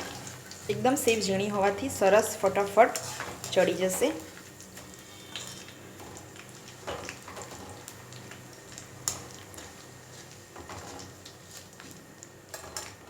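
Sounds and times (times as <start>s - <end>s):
food sizzling in hot oil: 0.0s - 13.0s
small crackles and clicks: 2.9s - 13.0s.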